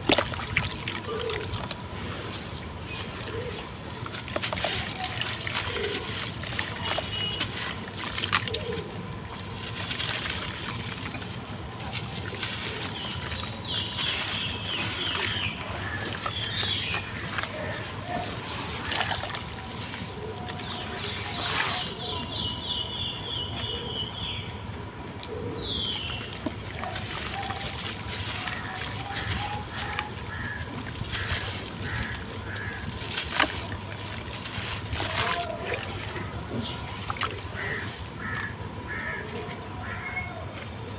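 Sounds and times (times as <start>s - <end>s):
blocks crumbling in water: 0.0s - 1.9s, 25.9s - 37.8s
water splashing and sloshing: 0.0s - 40.9s.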